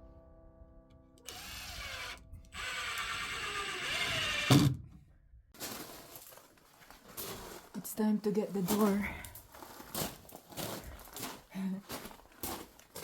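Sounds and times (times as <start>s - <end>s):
power tool motor running: 1.3s - 4.7s.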